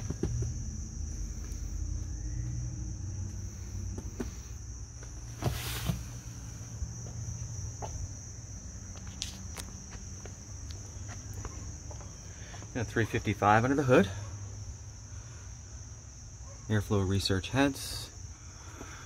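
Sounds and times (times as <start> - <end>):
low background rumble: 0.0 - 5.4
crickets chirring: 0.0 - 19.0
brief scuff: 5.4 - 6.1.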